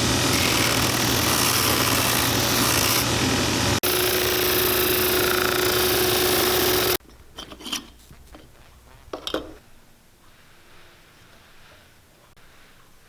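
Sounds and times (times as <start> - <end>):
sanding wheel grinding leather: 0.0 - 7.0.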